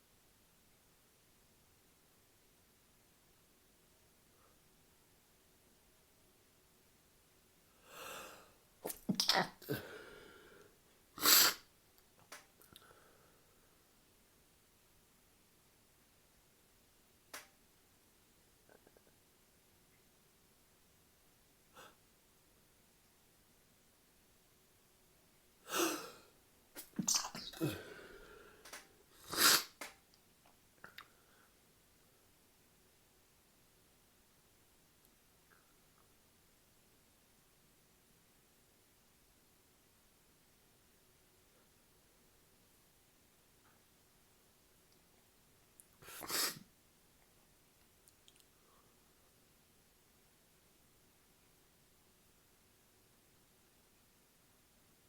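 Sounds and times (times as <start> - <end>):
person sneezing: 8.8 - 10.1, 11.2 - 11.7, 25.7 - 26.2, 26.8 - 28.2, 29.2 - 29.8, 46.0 - 46.7
breathy intake: 9.6 - 10.6, 27.0 - 28.6.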